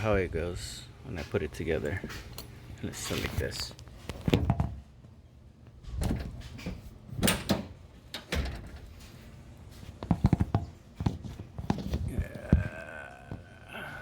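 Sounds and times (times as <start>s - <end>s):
hardware parts knocking and clattering: 5.9s - 9.2s, 9.9s - 12.7s.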